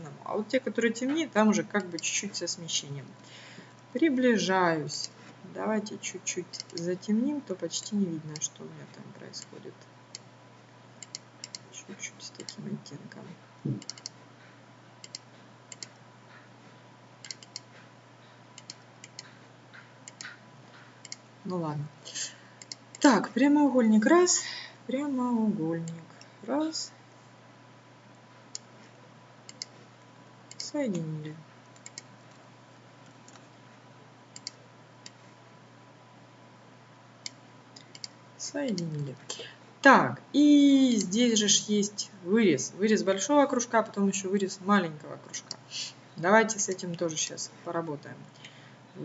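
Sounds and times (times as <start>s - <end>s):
faint electrical hum: 0.0s - 49.0s
computer mouse clicking: 1.8s - 2.1s, 6.6s - 6.9s, 11.0s - 11.7s, 13.8s - 14.2s, 15.0s - 16.0s, 17.2s - 17.7s, 18.6s - 19.4s, 20.0s - 20.4s, 21.0s - 21.2s, 22.6s - 23.0s, 29.5s - 29.8s, 30.5s - 30.7s, 31.7s - 32.1s, 34.3s - 35.2s, 37.2s - 38.9s.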